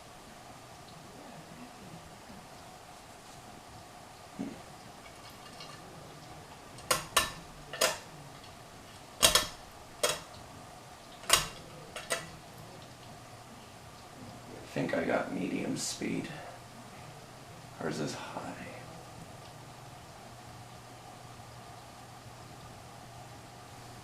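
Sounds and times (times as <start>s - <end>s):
ceiling fan pull-chain clicking: 9.2s - 10.4s.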